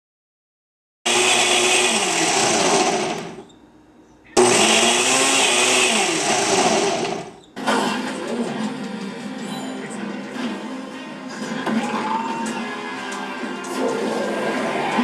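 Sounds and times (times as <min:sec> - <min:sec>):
electric blender running: 0:01.1 - 0:03.4, 0:04.4 - 0:07.4.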